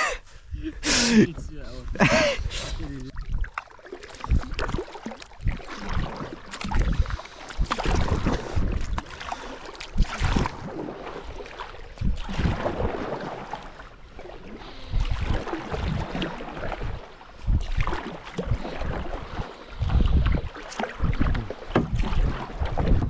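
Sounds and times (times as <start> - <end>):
paddle splashing in water: 2.7 - 23.0
wind buffeting microphone: 4.1 - 4.8, 5.4 - 13.3, 14.8 - 23.0.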